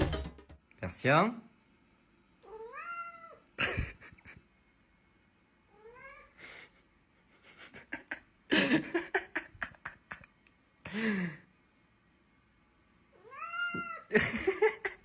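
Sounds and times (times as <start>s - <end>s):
cat meowing: 2.4s - 3.4s, 5.7s - 6.4s, 13.2s - 14.1s.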